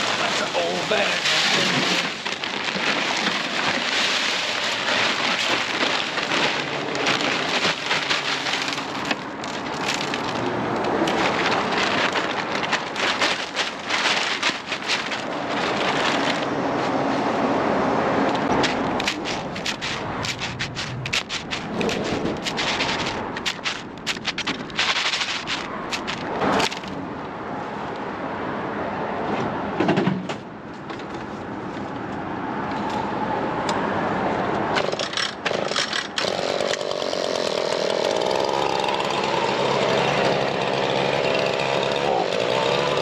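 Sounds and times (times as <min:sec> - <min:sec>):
rock salt pouring into hopper: 0:00.0 - 0:16.4.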